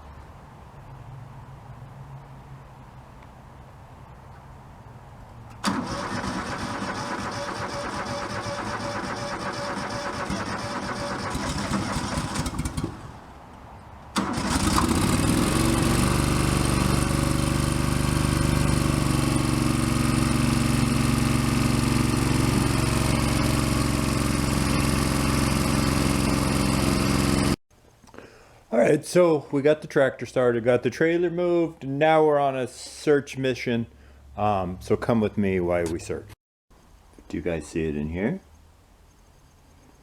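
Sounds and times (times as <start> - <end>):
tractor engine running: 5.5 - 27.6.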